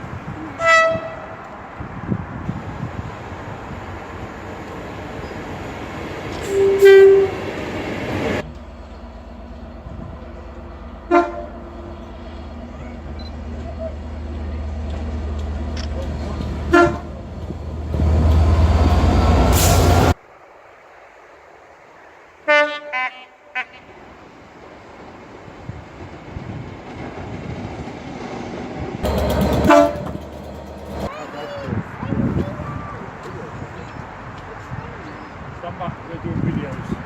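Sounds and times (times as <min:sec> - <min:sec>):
train rumbling past: 0:00.0 - 0:20.2, 0:23.5 - 0:34.7
train horn blasts: 0:00.6 - 0:01.4, 0:06.4 - 0:07.6, 0:11.1 - 0:11.9, 0:16.7 - 0:17.1, 0:22.5 - 0:24.0, 0:29.0 - 0:31.1
steady rumble: 0:29.0 - 0:31.2.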